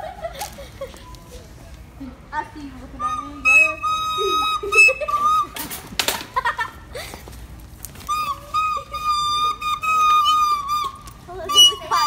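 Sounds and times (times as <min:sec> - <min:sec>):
flute-like high whistling: 0:03.0 - 0:05.8, 0:08.0 - 0:12.0.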